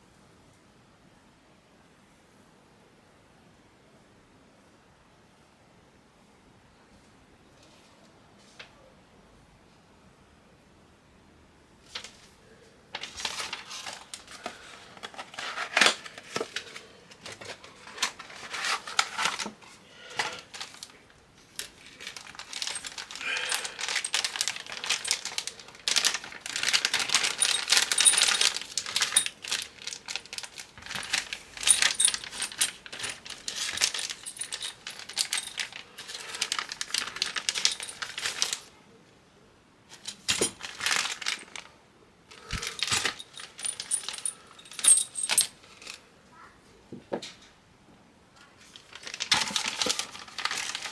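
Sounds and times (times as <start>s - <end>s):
computer parts clicking and rattling: 22.1s - 38.5s, 42.4s - 45.6s
metal pieces jingling: 22.1s - 38.5s, 40.3s - 41.6s, 42.4s - 45.6s.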